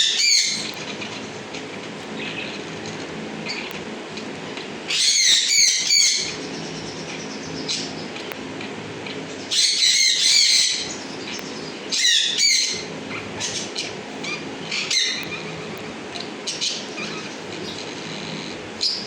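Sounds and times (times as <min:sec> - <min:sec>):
budgerigars chattering and warbling: 0:00.0 - 0:01.2, 0:04.9 - 0:08.2, 0:09.4 - 0:19.0
steady low hum: 0:00.0 - 0:19.0.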